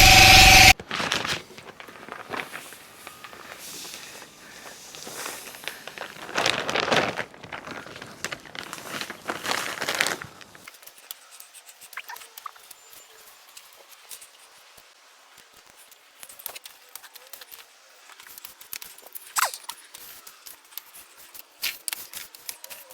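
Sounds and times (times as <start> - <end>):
sand scraping over paving: 1.3 - 10.6.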